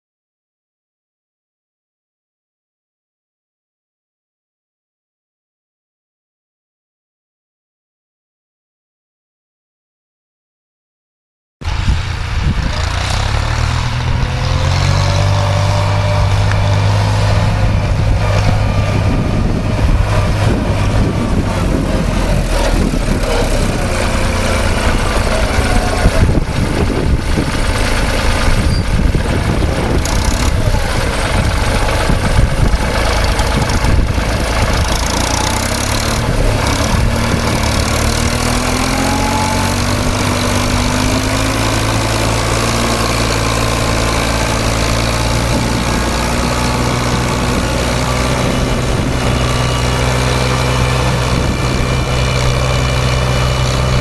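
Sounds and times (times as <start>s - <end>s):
farm machine engine running: 11.7s - 54.0s.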